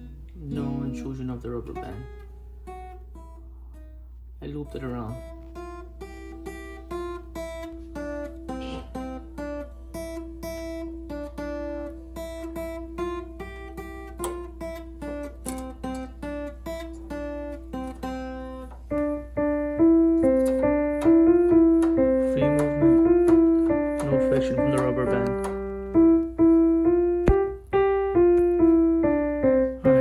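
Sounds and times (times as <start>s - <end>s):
low steady hum: 0.0s - 7.4s
plucked acoustic guitar: 0.0s - 30.0s.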